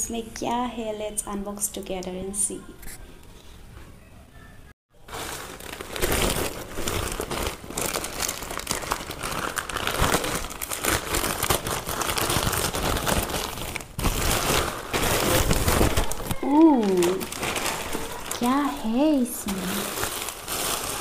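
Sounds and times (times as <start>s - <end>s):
packaging rustling and crinkling: 5.0s - 21.0s.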